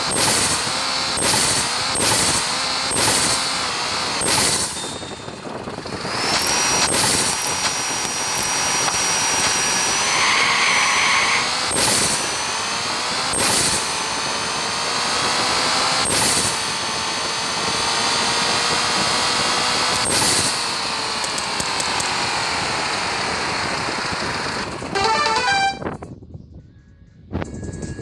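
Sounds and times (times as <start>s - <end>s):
car engine with turbo whistle: 0.0s - 26.0s
turbo flutter hissing bursts: 6.2s - 12.6s.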